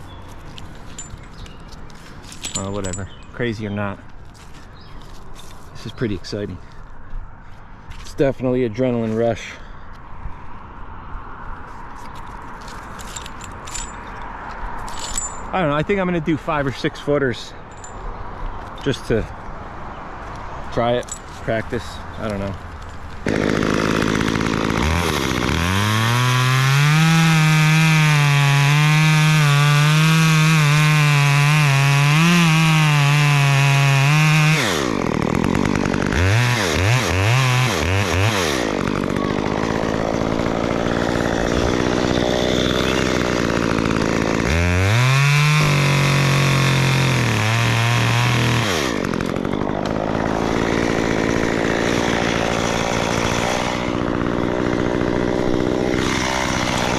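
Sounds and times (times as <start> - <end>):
chainsaw revving and idling: 0.9 - 3.9, 20.8 - 56.9.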